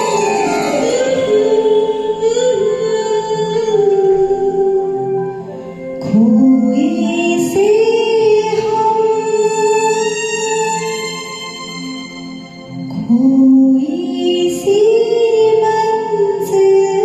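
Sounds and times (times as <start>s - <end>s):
karaoke duet singing: 0.0s - 11.9s, 12.9s - 17.0s
lower singing voice: 0.0s - 12.2s
backing track music: 0.0s - 17.0s.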